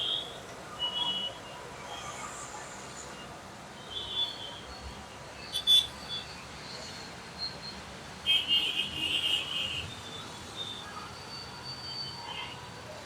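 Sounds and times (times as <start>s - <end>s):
city road traffic: 4.8s - 13.0s.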